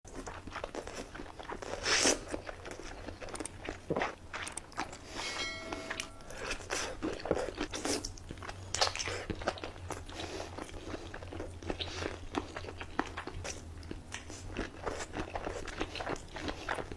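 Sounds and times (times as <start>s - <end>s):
chewing with crunches: 0.1s - 5.3s, 6.4s - 16.9s
faint low hum: 2.6s - 16.9s
brief pitched tone: 5.2s - 6.6s.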